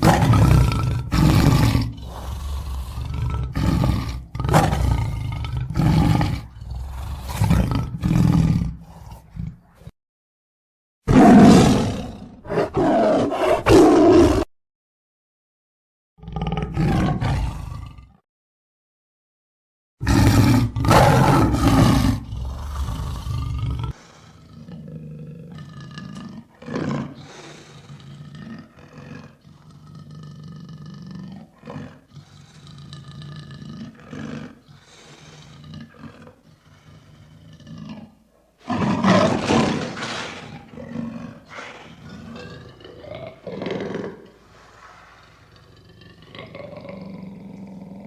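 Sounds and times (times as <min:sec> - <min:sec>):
lion roaring: 0:00.0 - 0:09.9, 0:11.1 - 0:14.5, 0:16.2 - 0:18.2, 0:20.0 - 0:48.0.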